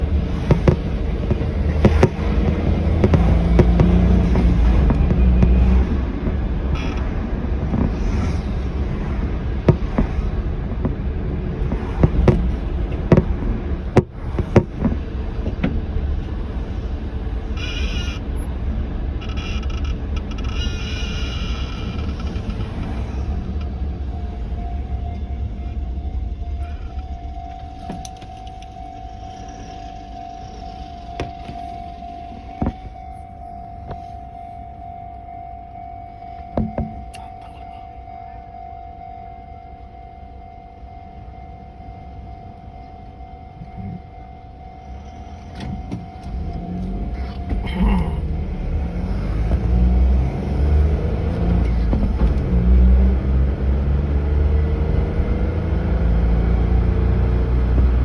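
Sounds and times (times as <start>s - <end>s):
road traffic rumble: 0.0s - 58.0s
sharp knocks: 0.4s - 5.6s
level-crossing warning bell: 23.2s - 58.0s.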